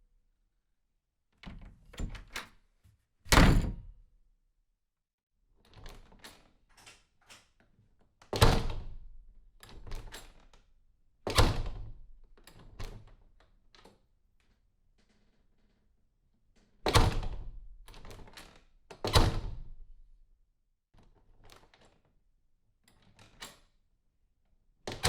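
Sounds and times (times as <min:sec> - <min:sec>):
door handle rattle: 0:02.0 - 0:02.4, 0:03.3 - 0:04.0
door latch clicks: 0:03.3 - 0:03.9
loud door slams: 0:03.3 - 0:04.0.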